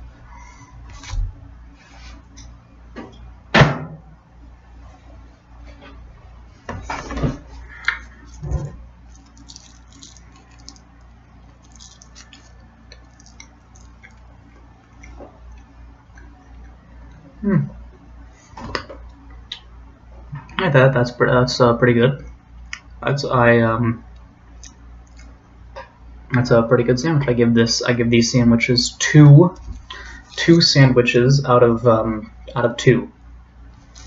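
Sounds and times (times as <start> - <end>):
low steady hum: 0.0 - 34.0
person biting food: 7.6 - 15.7.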